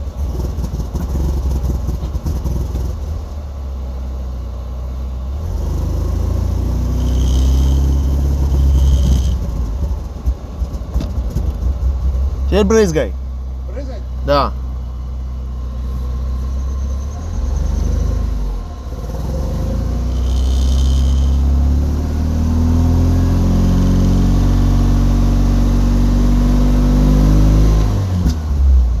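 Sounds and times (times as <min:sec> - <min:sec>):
car engine running: 0:06.7 - 0:17.0, 0:18.8 - 0:21.8.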